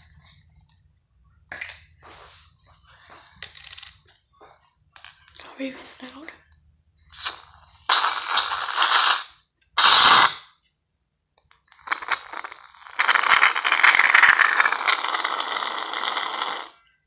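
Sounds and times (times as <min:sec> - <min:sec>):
aerosol can spraying foam: 0:07.1 - 0:10.5.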